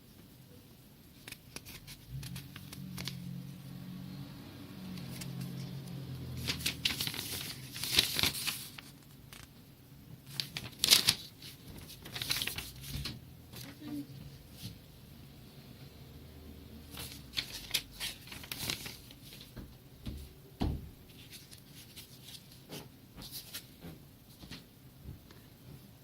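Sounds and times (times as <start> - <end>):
low steady hum: 0.0 - 22.6
plastic packaging crinkling: 6.3 - 9.6, 10.2 - 13.9, 16.9 - 19.5.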